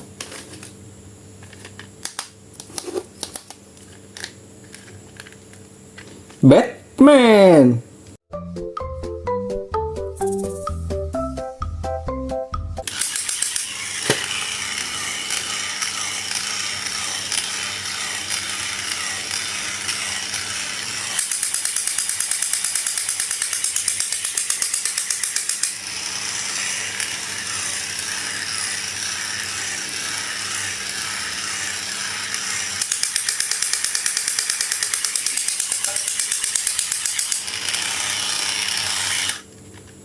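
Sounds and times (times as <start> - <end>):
mechanical ratcheting clicks: 12.8 - 25.9, 26.6 - 39.4.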